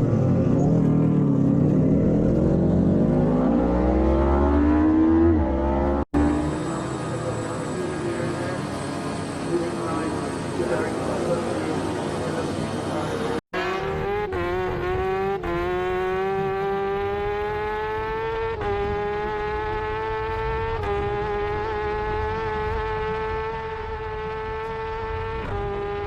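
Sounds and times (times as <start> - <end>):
race motorcycle engine revving: 0.0 - 8.2, 13.6 - 26.0.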